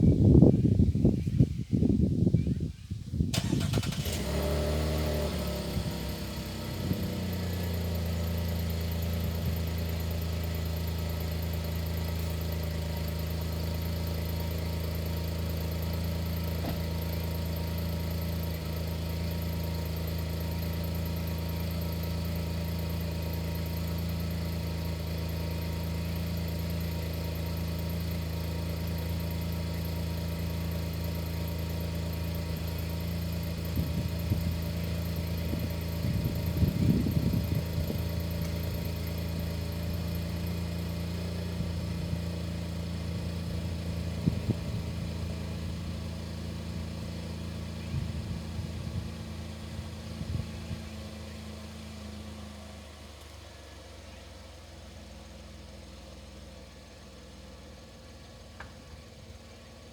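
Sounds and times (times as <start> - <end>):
engine starting and idling: 3.3 - 45.0.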